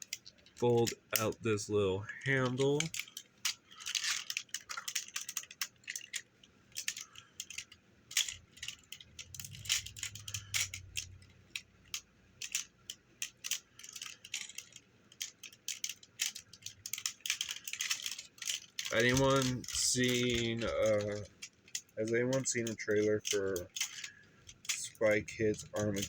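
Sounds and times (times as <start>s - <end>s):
plastic toy parts clicking: 0.0s - 1.6s, 2.3s - 26.0s.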